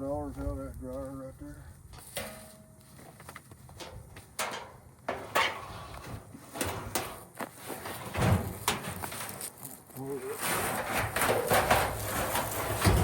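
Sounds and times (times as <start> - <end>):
metal clanks and scrapes: 2.0 - 2.7, 3.8 - 13.0.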